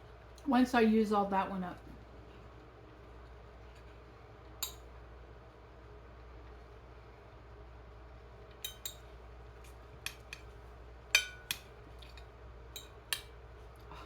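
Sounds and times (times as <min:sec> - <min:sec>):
cutlery clinking on a plate: 0:11.2 - 0:13.3.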